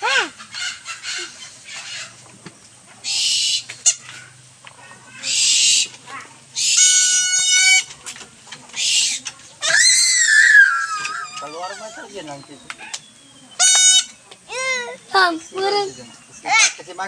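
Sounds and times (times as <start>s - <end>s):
owl screeching: 3.0s - 4.1s, 5.1s - 5.9s, 6.6s - 7.9s, 8.8s - 12.3s, 13.6s - 14.8s.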